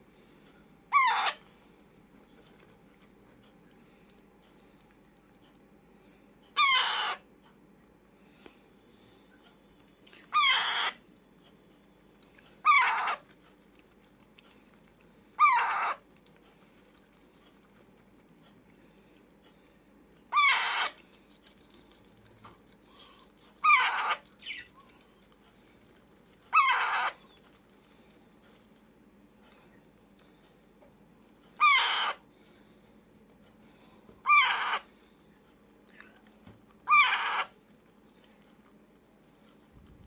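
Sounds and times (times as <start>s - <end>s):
parakeet squawking: 0.9s - 1.4s, 6.6s - 7.2s, 10.3s - 11.0s, 12.6s - 13.2s, 15.4s - 16.0s, 20.3s - 21.0s, 23.6s - 24.7s, 26.5s - 27.3s, 31.6s - 32.2s, 34.2s - 34.9s, 36.8s - 37.5s.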